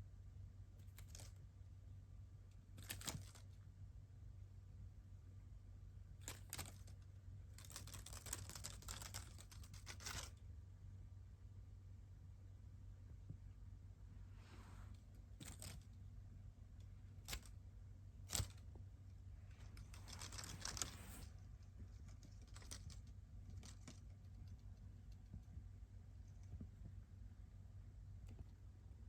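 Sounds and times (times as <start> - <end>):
low steady hum: 0.0 - 29.0
brief rustle: 19.5 - 21.4.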